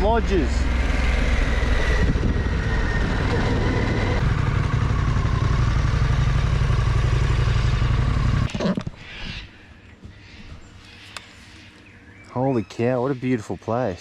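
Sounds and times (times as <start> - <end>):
motorcycle engine cruising: 0.0 - 8.9
outdoor ambience: 0.0 - 14.0
wind rush: 1.3 - 4.2.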